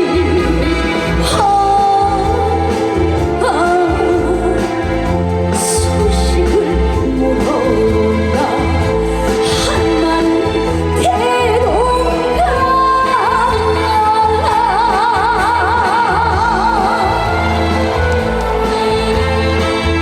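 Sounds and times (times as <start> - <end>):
trot song over sound system: 0.0 - 20.0.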